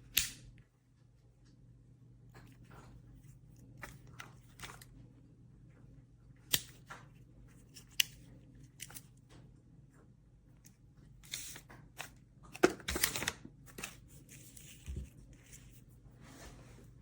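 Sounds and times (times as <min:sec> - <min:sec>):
handling rustles and clicks: 0:02.3 - 0:05.0, 0:06.5 - 0:09.5, 0:10.6 - 0:16.0.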